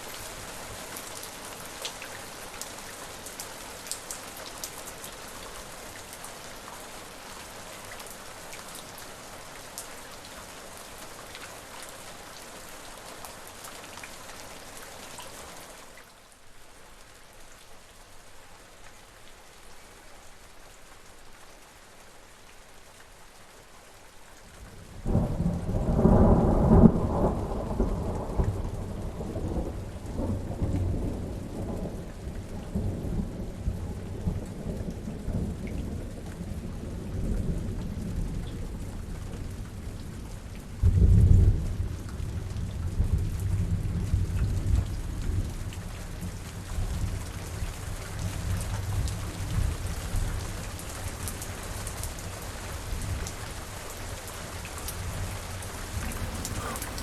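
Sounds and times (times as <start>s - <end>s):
steady rain hissing: 0.0s - 57.0s
thunder rumbling: 56.1s - 57.0s.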